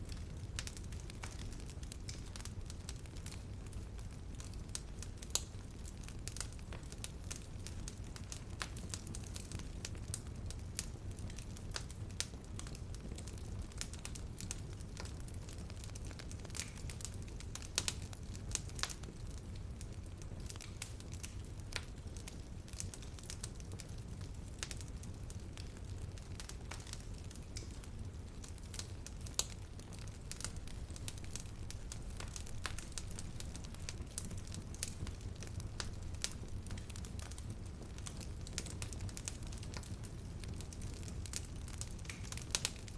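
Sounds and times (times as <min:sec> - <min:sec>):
wood fire crackling: 0:00.0 - 0:42.9
sharp fire pops: 0:24.6 - 0:42.8.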